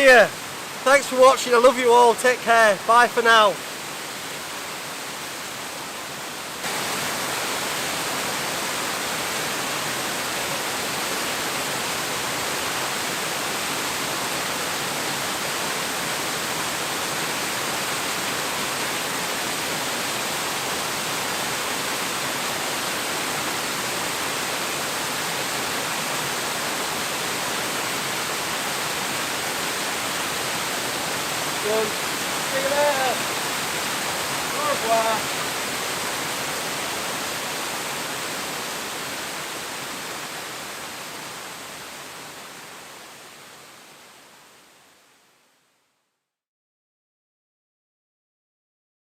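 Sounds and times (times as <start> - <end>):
rain hissing: 0.0 - 4.6, 13.1 - 42.1.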